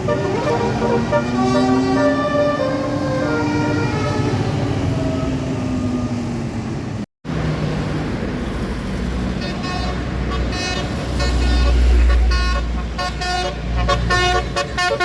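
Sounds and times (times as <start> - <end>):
bus air horn melody: 0.0 - 4.2, 9.4 - 15.0
bus engine rumble: 0.0 - 15.0.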